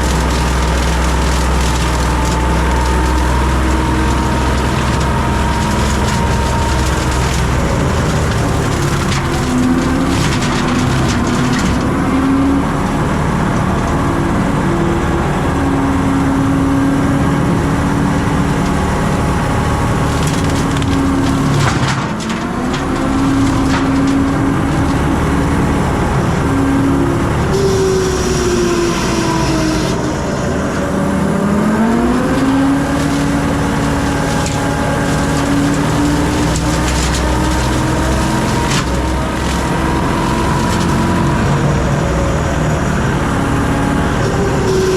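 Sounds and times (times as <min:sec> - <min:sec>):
brush cutter chewing through brush: 0:00.0 - 0:12.0, 0:17.8 - 0:25.9, 0:27.5 - 0:41.7
wood cracking and splintering: 0:00.0 - 0:14.9, 0:16.0 - 0:44.9
diesel engine running hard: 0:00.0 - 0:44.9.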